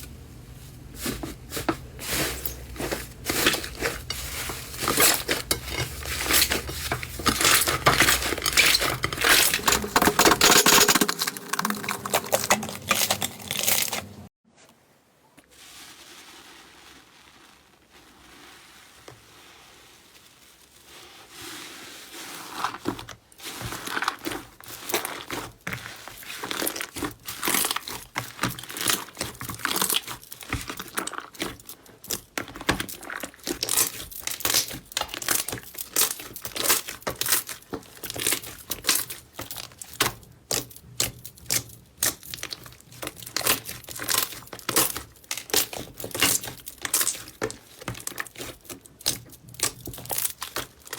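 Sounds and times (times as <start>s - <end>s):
slime crackling and popping: 2.4s - 14.2s, 26.2s - 50.9s.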